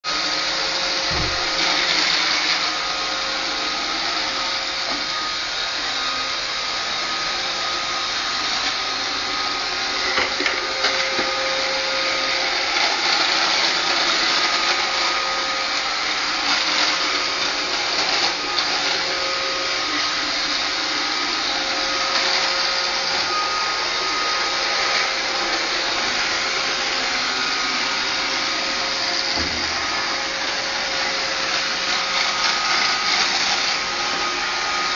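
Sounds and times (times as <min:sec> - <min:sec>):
robot vacuum cleaner whirring: 0:00.1 - 0:34.9.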